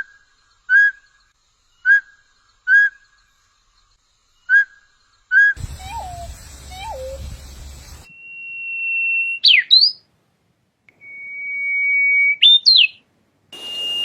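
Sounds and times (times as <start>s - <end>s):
bird whistling song: 1.8s - 3.0s, 4.5s - 10.0s, 11.0s - 13.0s, 13.6s - 14.0s.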